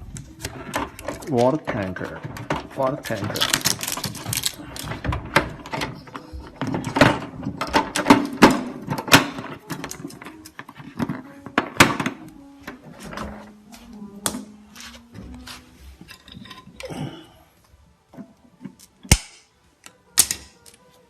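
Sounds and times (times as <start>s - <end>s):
plastic parts clicking and knocking: 0.0s - 13.3s.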